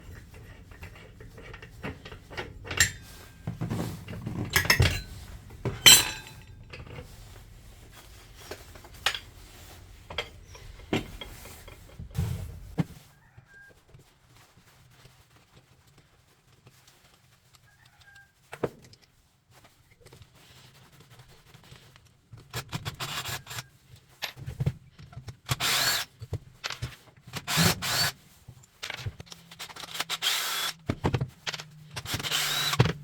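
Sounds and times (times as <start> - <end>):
hard objects clicking and knocking: 0.0 - 12.9.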